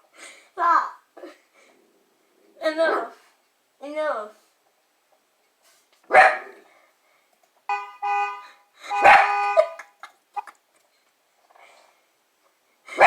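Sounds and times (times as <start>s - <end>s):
dog barking: 6.1s - 6.6s, 8.9s - 9.8s
car horn honking: 7.7s - 9.8s.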